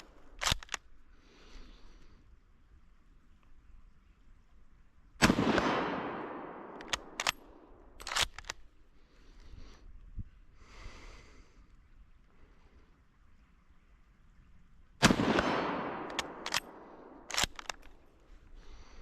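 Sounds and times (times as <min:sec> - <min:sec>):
rifle bolt metallic clicks: 0:00.0 - 0:01.0, 0:05.2 - 0:08.8, 0:15.0 - 0:18.3
rifle shot with echo: 0:05.2 - 0:08.3, 0:15.0 - 0:17.9.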